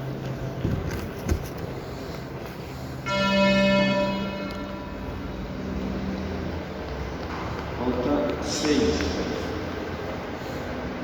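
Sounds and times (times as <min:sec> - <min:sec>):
electronic chime: 0:03.0 - 0:06.1.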